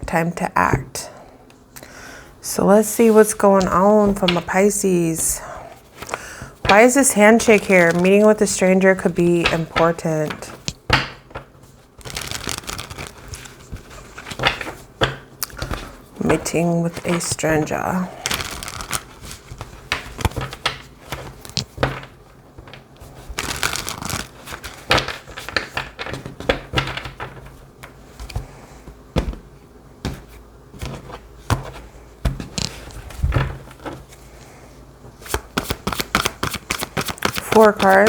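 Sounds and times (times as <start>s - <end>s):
cards being shuffled: 3.0s - 5.2s, 5.8s - 28.5s, 30.1s - 34.1s, 35.2s - 38.0s.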